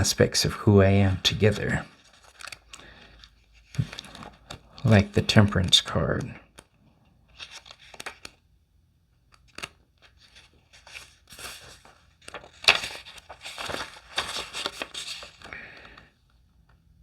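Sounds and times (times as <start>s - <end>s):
rustling and crinkling: 1.3s - 4.8s, 9.5s - 16.1s.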